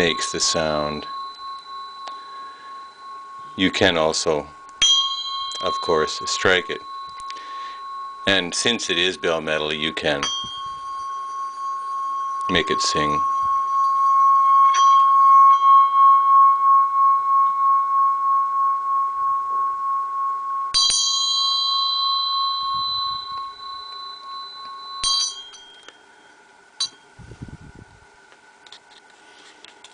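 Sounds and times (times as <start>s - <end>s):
hand bell ringing: 0.0s - 16.3s, 20.7s - 27.1s
hand bell struck: 0.0s - 17.9s, 20.7s - 27.1s.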